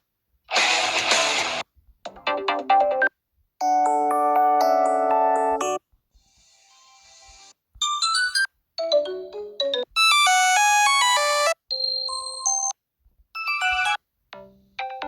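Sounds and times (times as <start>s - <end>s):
mobile phone ringtone melodies: 7.8s - 12.8s.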